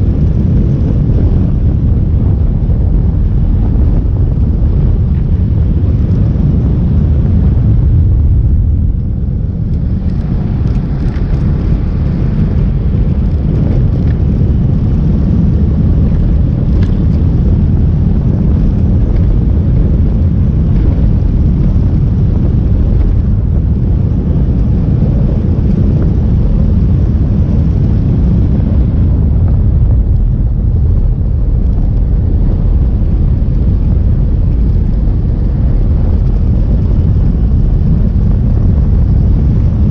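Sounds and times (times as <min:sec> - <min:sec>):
motorcycle engine rumble: 0:00.0 - 0:39.9
wind buffeting microphone: 0:00.0 - 0:39.9.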